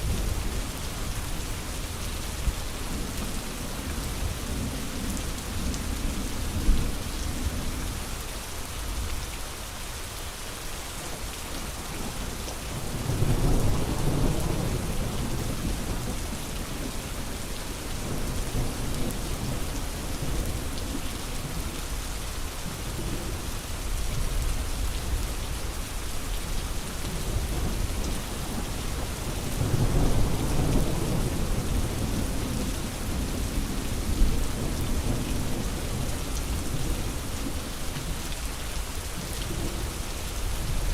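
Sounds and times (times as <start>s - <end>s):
steady rain falling: 0.0s - 40.9s
low rolls of thunder: 29.6s - 36.8s.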